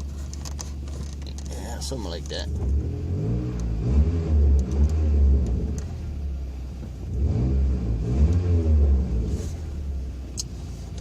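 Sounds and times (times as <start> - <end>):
low exhaust rumble: 0.0 - 11.0
pickup engine revving: 1.4 - 6.4, 7.1 - 10.0.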